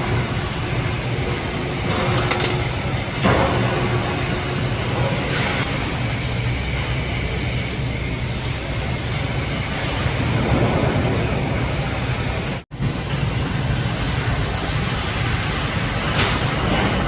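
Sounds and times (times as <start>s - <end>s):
welding arc hissing: 0.0s - 12.6s.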